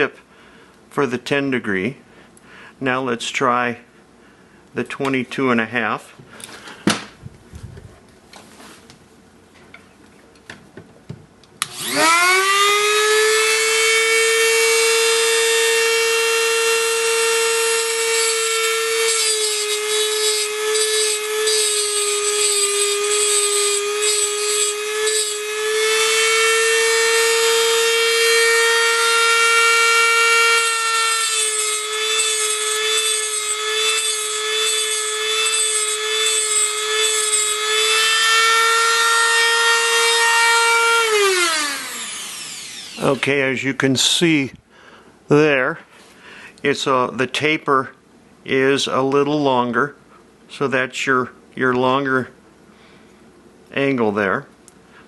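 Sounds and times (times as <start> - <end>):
grinder motor whining: 11.6 - 43.3.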